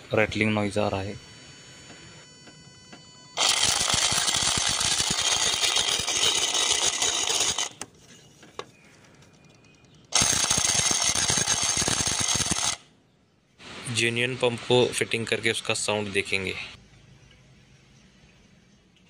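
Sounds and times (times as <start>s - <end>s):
water pump harsh rattle: 3.4s - 7.8s, 10.2s - 12.8s.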